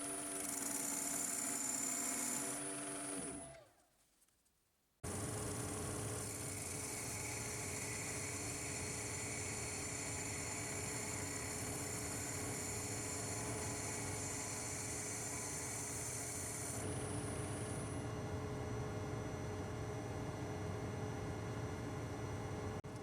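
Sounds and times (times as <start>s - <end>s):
machine humming and whining: 5.1s - 22.8s.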